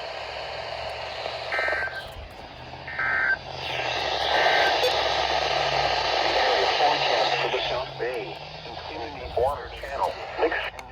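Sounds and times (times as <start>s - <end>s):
buzzy digital chirps: 2.9s - 5.4s.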